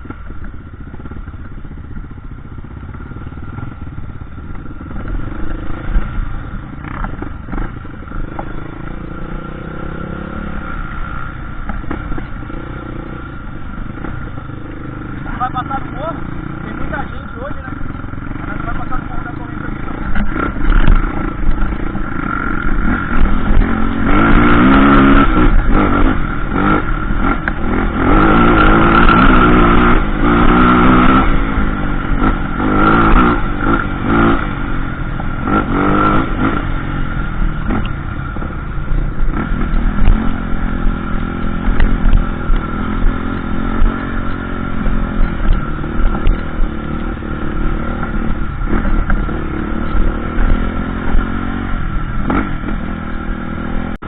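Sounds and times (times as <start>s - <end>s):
low wind rumble: 0.0s - 54.0s
motorcycle engine revving: 0.0s - 54.0s.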